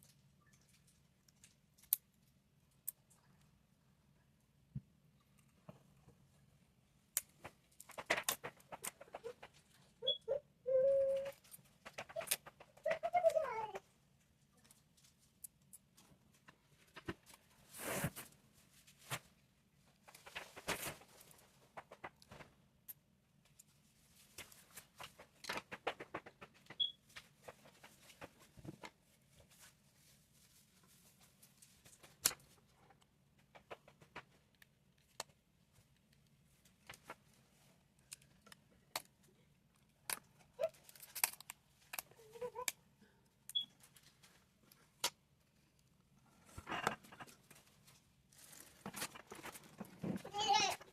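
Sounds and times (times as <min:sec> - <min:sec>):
light clicks and taps of tools: 0:00.0 - 0:03.5, 0:38.0 - 0:42.1.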